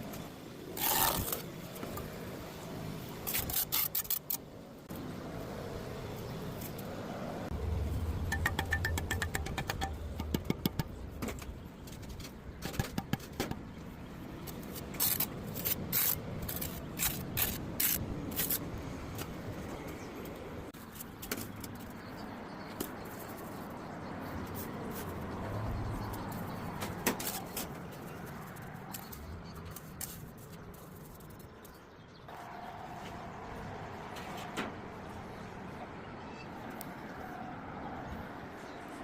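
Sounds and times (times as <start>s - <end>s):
steady low rumble: 7.4s - 12.5s
hard clicks and knocks: 8.3s - 11.5s.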